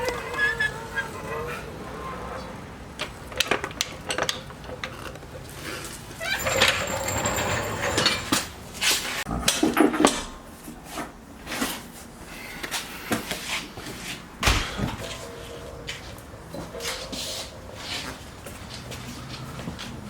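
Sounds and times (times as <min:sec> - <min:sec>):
metal tools clanking: 0:03.4 - 0:09.2.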